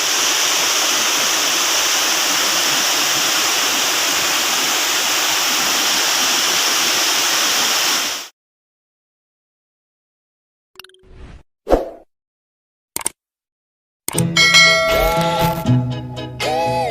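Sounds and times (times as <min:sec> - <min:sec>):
rushing river water: 0:00.0 - 0:08.3.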